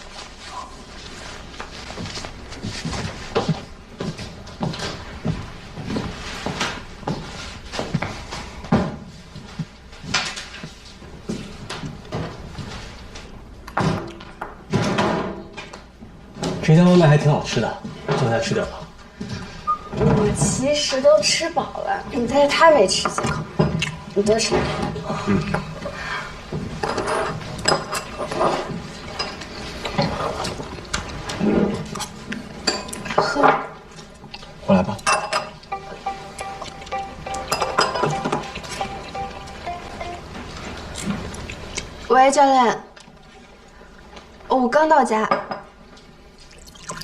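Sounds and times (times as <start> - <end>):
dishes knocking and clinking: 13.7 - 15.7, 26.5 - 30.7, 35.0 - 41.2
chopsticks and containers tapping: 35.1 - 41.5.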